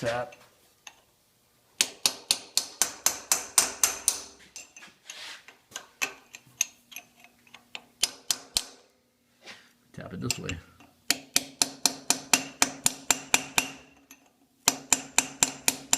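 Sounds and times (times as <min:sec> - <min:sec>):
hammer tapping on chisel: 0:01.8 - 0:04.7, 0:07.7 - 0:08.8, 0:10.2 - 0:15.9.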